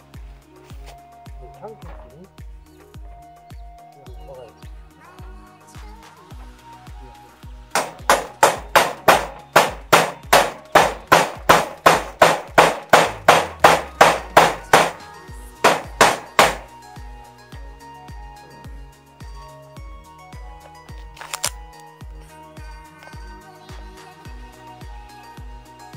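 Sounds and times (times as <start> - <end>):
hammer blows: 7.8 - 16.7.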